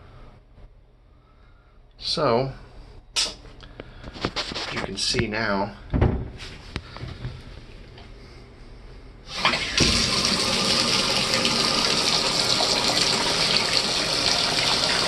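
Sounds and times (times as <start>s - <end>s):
shower valve turning on: 9.3s - 15.0s
water splashing into bathtub: 9.3s - 15.0s.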